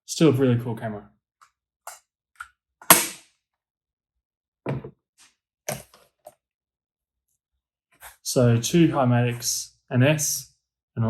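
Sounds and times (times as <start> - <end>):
loud sharp click: 2.8 - 3.2.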